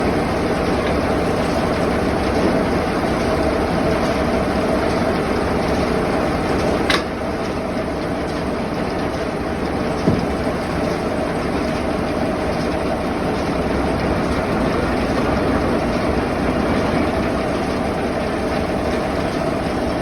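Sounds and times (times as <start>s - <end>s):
sawmill machinery running: 0.0s - 20.0s.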